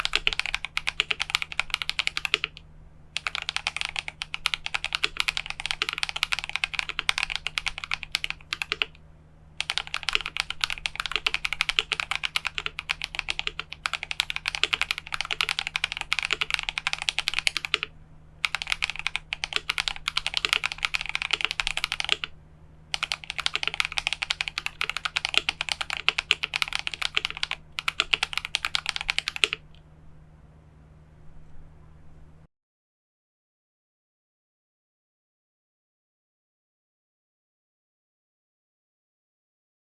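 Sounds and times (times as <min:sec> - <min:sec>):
mechanical keyboard typing: 0:00.0 - 0:02.6, 0:03.2 - 0:09.0, 0:09.6 - 0:22.3, 0:22.9 - 0:29.8
faint low hum: 0:00.0 - 0:32.5.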